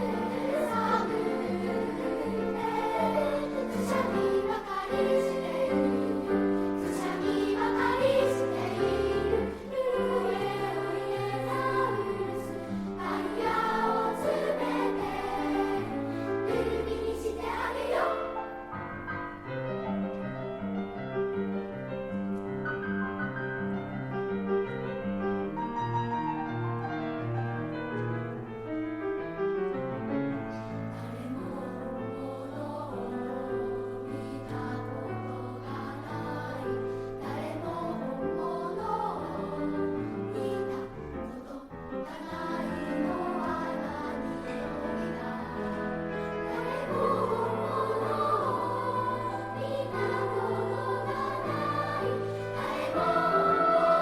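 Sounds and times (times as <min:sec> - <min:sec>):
children's choir singing: 0:00.0 - 0:19.6, 0:30.5 - 0:54.0.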